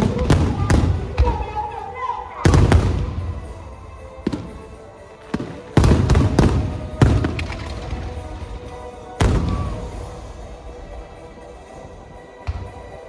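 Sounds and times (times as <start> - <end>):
fireworks booming: 0.0 - 1.5, 2.4 - 11.1
music: 0.0 - 13.0.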